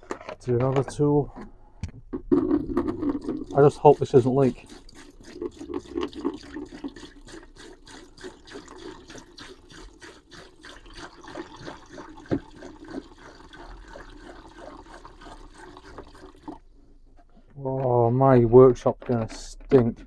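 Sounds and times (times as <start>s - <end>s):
liquid pouring and gurgling: 2.4s - 16.7s.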